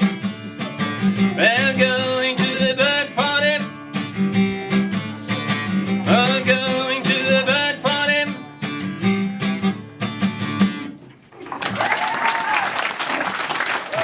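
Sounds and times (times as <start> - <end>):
acoustic guitar strumming: 0.0 - 11.4
man singing: 1.0 - 8.6.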